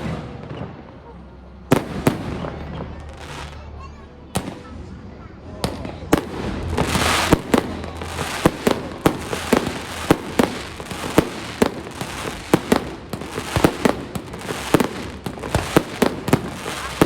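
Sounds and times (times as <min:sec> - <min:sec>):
fireworks bangs: 0:00.0 - 0:03.7, 0:04.3 - 0:17.0
crackling hiss: 0:06.2 - 0:17.0.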